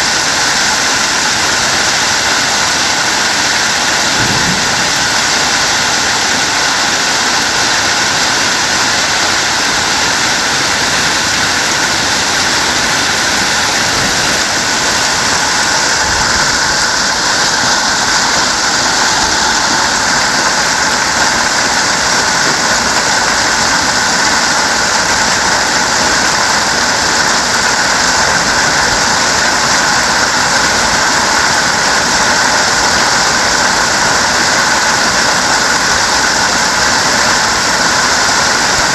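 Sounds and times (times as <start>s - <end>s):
heavy hail clattering: 0.0s - 38.9s.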